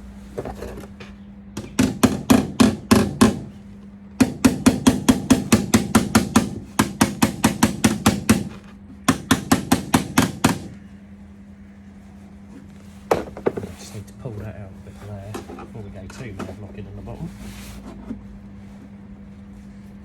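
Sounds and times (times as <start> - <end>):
hammer tapping on metal panel: 1.6 - 3.5, 4.2 - 10.8.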